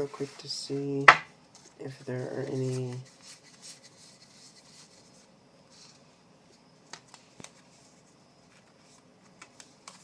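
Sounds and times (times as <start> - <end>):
trading cards rustling: 1.6 - 5.2.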